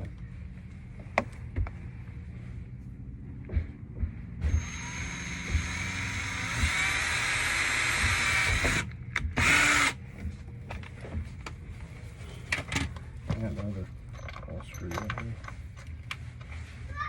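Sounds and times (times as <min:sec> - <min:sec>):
power drill driving a screw: 0:04.5 - 0:10.0.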